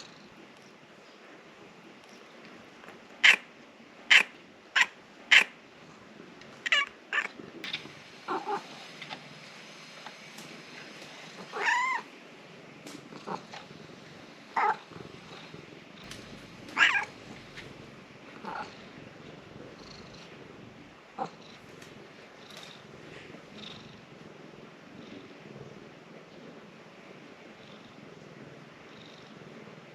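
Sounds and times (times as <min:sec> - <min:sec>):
cat meowing: 0:06.6 - 0:07.4, 0:11.4 - 0:12.1, 0:14.6 - 0:14.9, 0:16.1 - 0:17.5.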